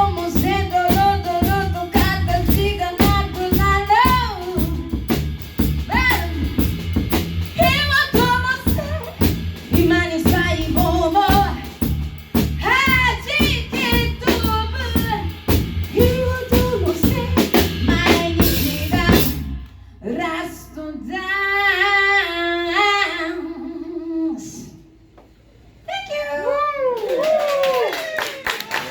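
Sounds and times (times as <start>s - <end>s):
live band playing: 0.0s - 19.6s
person singing: 16.0s - 24.8s.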